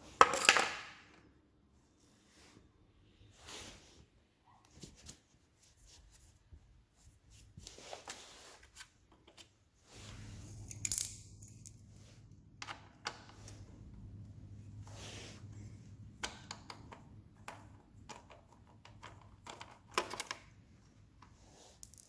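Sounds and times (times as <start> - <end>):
low steady hum: 9.9 - 19.8
metallic clicks and clinks: 10.5 - 11.8.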